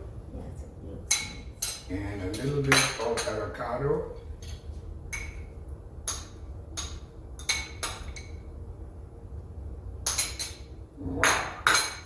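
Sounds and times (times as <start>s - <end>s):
utensils clinking on dishes: 1.1s - 3.6s, 4.2s - 5.5s, 6.1s - 8.4s, 10.0s - 12.0s.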